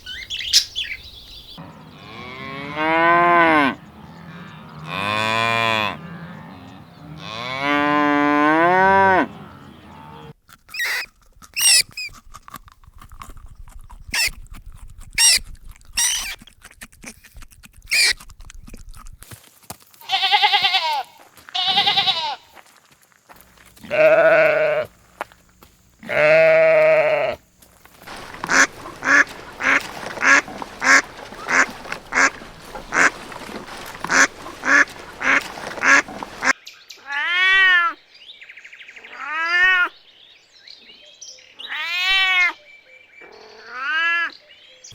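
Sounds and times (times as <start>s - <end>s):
farm animal calls: 0.0s - 12.1s, 15.2s - 15.4s, 16.0s - 16.4s, 17.9s - 18.2s, 20.0s - 22.6s, 23.8s - 25.0s, 26.0s - 38.0s, 41.5s - 44.9s
goat or sheep bleats: 20.0s - 22.6s, 23.8s - 24.9s, 26.0s - 27.4s, 28.1s - 36.5s.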